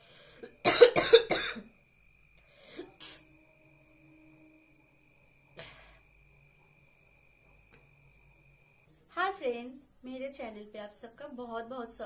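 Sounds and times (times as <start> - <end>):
woman coughing: 0.5 - 1.7.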